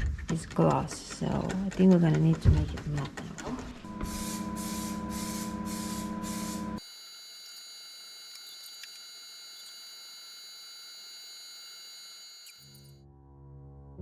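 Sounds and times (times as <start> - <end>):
loud buzzing tone: 3.9 - 13.0.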